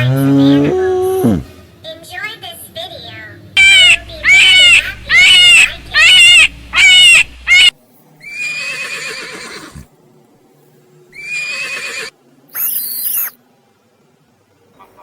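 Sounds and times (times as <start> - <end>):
horse whinnying: 0.0 - 1.5, 8.3 - 9.9, 11.2 - 12.1.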